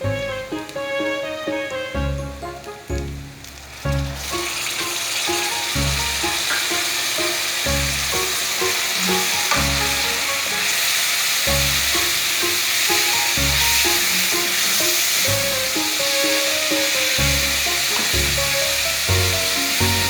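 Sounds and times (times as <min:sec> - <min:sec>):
background music with bass line: 0:00.0 - 0:04.4, 0:05.7 - 0:06.5, 0:07.6 - 0:08.5, 0:09.1 - 0:10.3, 0:11.5 - 0:12.2, 0:13.4 - 0:14.1, 0:15.3 - 0:16.0, 0:17.2 - 0:20.0
food sizzling in oil: 0:02.5 - 0:20.0.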